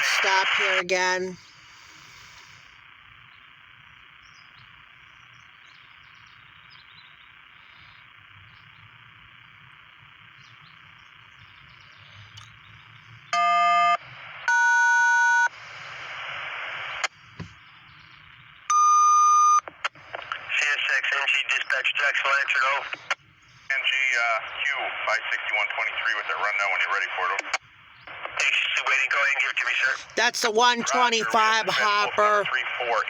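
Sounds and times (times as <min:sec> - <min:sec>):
radio scanner hissing: 0:00.0 - 0:02.9, 0:15.2 - 0:17.7, 0:19.7 - 0:33.0
burst of static: 0:00.0 - 0:05.1, 0:19.7 - 0:33.0.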